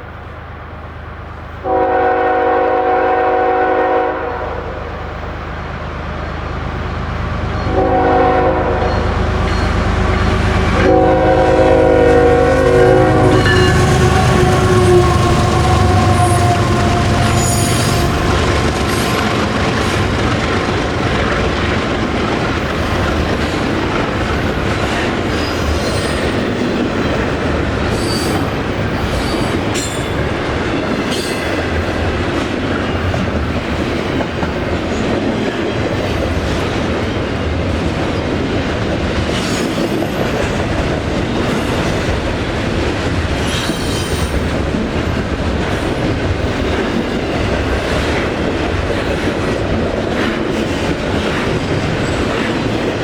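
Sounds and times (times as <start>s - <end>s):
train wheels on rails: 0.0s - 53.0s
high wheel squeals: 8.9s - 10.5s, 12.5s - 20.1s, 27.9s - 30.4s.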